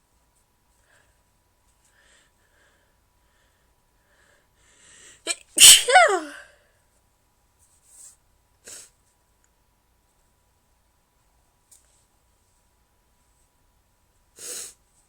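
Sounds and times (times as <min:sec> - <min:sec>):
faint intake of breath: 0:01.9 - 0:05.2
woman sneezing: 0:05.3 - 0:06.6.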